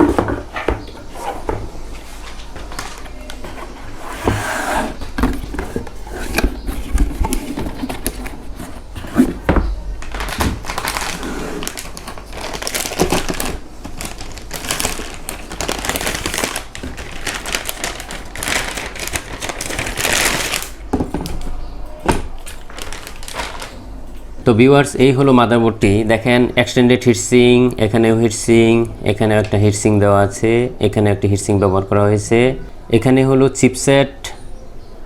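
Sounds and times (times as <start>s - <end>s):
cardboard clicks and knocks: 2.6s - 14.0s
plastic packaging crinkling: 5.2s - 21.6s, 22.2s - 24.3s.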